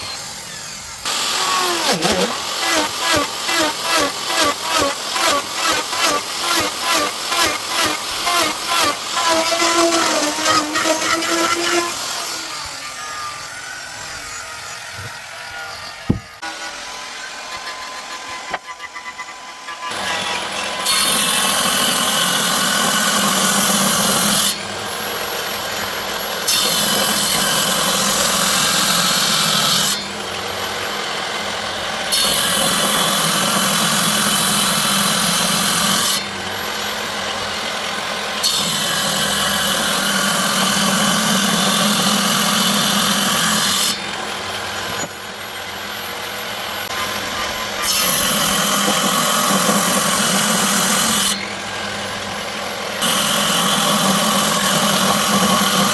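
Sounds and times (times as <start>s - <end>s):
power tool cutting wood: 0.0s - 55.9s
motor running: 9.2s - 18.6s.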